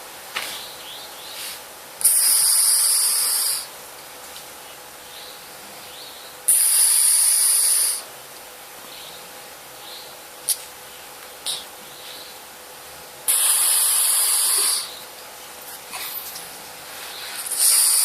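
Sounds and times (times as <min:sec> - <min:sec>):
person snoring with hissing breaths: 0:02.0 - 0:03.7, 0:06.5 - 0:08.1, 0:13.3 - 0:15.0, 0:17.1 - 0:18.0.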